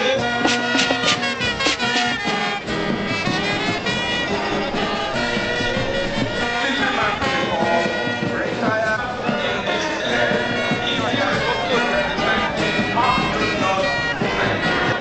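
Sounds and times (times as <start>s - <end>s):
brass band music: 0.0s - 15.0s.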